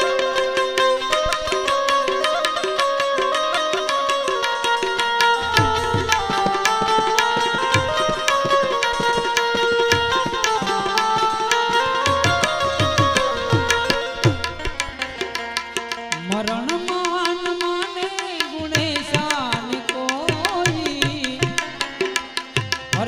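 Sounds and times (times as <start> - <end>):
harmonium melody: 0.0 - 23.0
fast hand-drum rhythm: 5.3 - 23.0.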